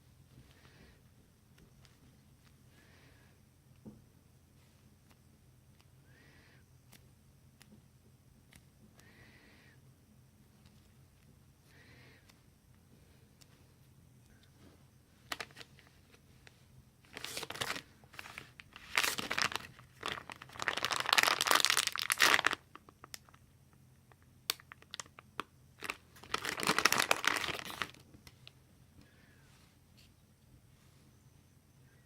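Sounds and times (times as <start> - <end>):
plastic packaging crinkling: 15.3 - 15.9, 17.1 - 23.4, 24.5 - 28.5.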